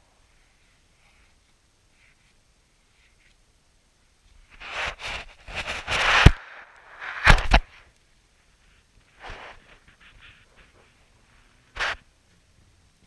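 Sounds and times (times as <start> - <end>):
crunching scrapes: 4.5 - 7.8.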